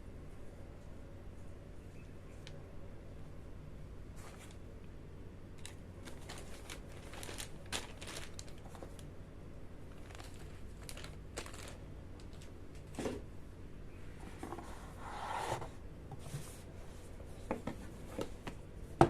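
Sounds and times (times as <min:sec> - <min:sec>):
steady low hum: 0:00.0 - 0:19.0
packaging rustling and crinkling: 0:05.6 - 0:09.2, 0:09.9 - 0:13.2.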